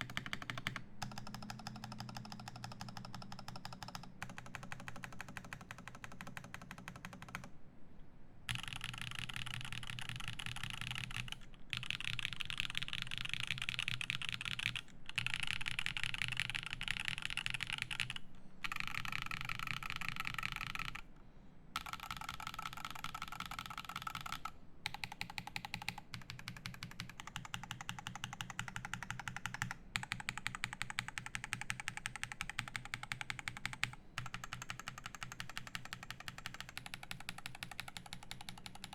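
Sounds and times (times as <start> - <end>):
mechanical keyboard typing: 0.0 - 7.5, 8.5 - 21.1, 21.8 - 38.9.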